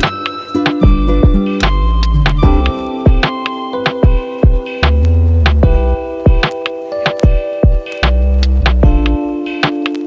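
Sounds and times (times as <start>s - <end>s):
sustained pitched notes: 0.0s - 6.1s
sharp drum hits: 0.0s - 9.8s
deep bass line: 0.9s - 2.8s, 4.8s - 6.0s, 8.0s - 9.2s.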